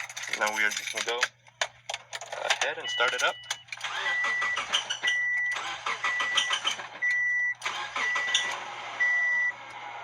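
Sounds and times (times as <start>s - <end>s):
warning chime beeping: 2.8s - 9.6s
car engine cranking and starting: 3.6s - 10.0s.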